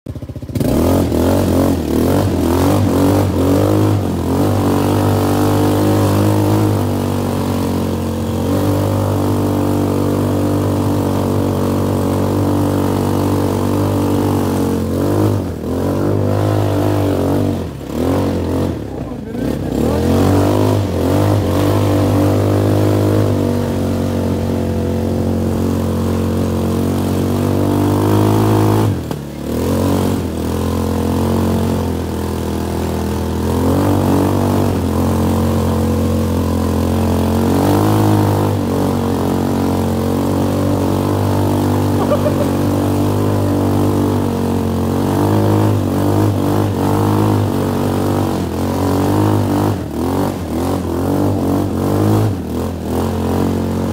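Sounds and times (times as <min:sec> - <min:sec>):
atv engine revving: 0:00.1 - 0:53.9.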